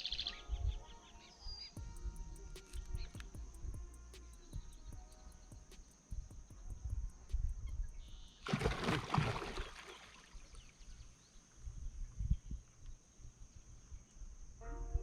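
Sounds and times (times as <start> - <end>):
loud splash in water: 8.4 - 10.4.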